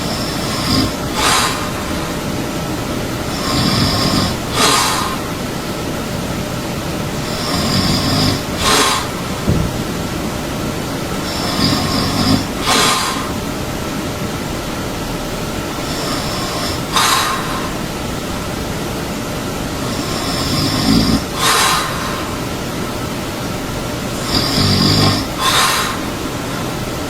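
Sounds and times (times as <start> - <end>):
person snoring: 0.1 - 2.0, 3.3 - 5.2, 7.2 - 9.2, 11.3 - 13.4, 19.8 - 22.4, 24.2 - 26.3
breathy exhale: 0.1 - 2.2, 3.3 - 5.4, 7.3 - 9.4, 11.3 - 13.4, 15.9 - 17.9, 21.1 - 22.6, 24.2 - 26.9.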